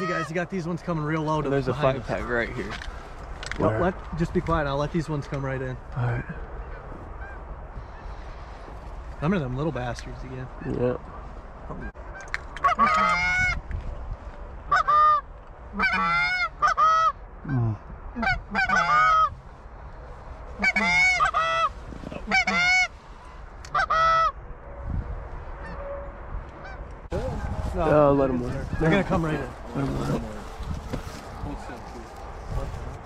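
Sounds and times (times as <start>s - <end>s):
geese honking: 0.0s - 0.4s, 6.6s - 8.5s, 11.7s - 13.6s, 14.7s - 17.6s, 18.2s - 19.4s, 20.5s - 24.4s, 25.6s - 26.0s, 26.6s - 27.7s.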